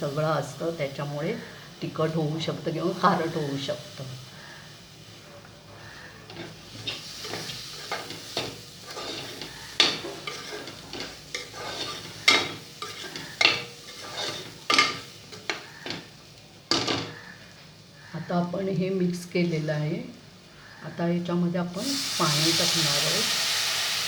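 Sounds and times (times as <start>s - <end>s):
light sizzle: 0.0s - 24.0s
spoon scraping metal pot: 6.2s - 16.1s.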